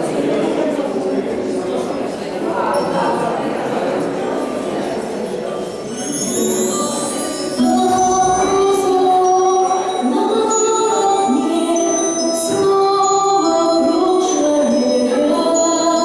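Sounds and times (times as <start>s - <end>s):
bright high chiming flourish: 1.5s - 16.0s
melody of long held notes: 4.7s - 16.0s.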